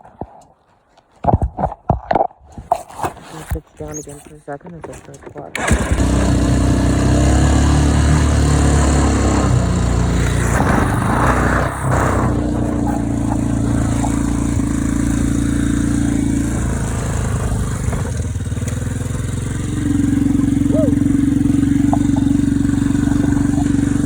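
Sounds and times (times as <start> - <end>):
atv engine running: 5.5 - 24.0.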